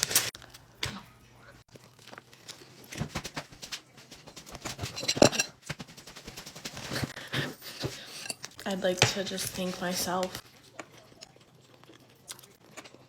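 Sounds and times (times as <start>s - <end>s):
crunching and chewing food: 0.0s - 3.1s, 10.3s - 13.0s.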